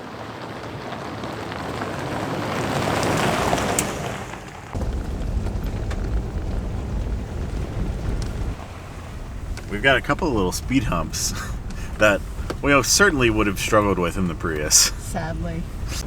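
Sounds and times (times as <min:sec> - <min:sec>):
engine and road rumble: 0:00.0 - 0:16.0
tyres on gravel: 0:00.0 - 0:16.0.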